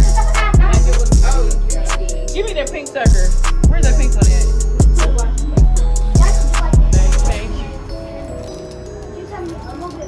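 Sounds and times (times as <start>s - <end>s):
hip hop beat with heavy bass: 0.0s - 10.0s
person rapping or singing: 0.0s - 10.0s.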